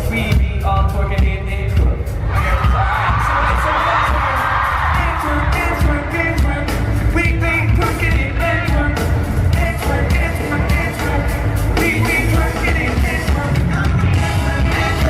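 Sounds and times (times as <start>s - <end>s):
live pop-rock band: 0.0s - 15.0s
crowd screaming: 2.2s - 6.5s.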